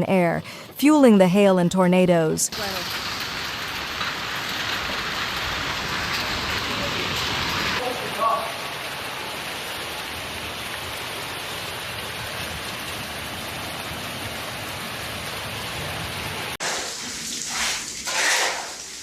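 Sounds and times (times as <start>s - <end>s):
hail pelting onto surfaces: 2.6s - 9.3s
surges of storm noise: 2.6s - 16.6s.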